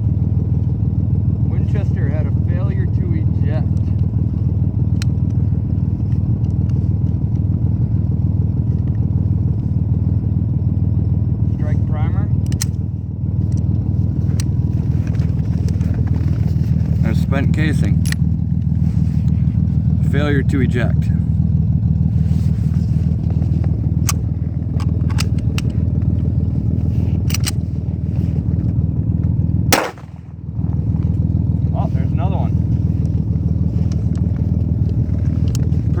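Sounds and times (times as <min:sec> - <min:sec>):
vehicle engine idling: 0:00.0 - 0:36.0
pistol metallic clicks: 0:12.5 - 0:12.8, 0:29.7 - 0:30.3
loud sharp crack: 0:29.7 - 0:30.5.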